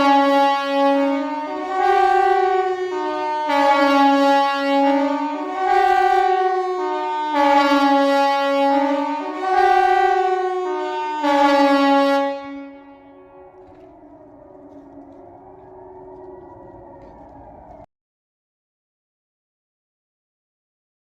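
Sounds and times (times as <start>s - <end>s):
two-tone siren: 0.0s - 17.9s.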